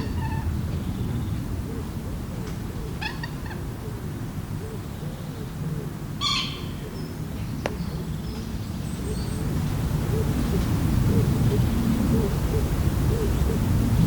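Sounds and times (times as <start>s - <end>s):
soft low bird calls: 0.0s - 14.0s
steady low rumble: 0.0s - 14.0s.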